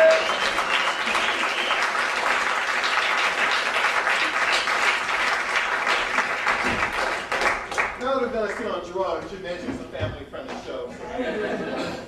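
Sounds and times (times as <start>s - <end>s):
audience applauding: 0.0s - 8.7s.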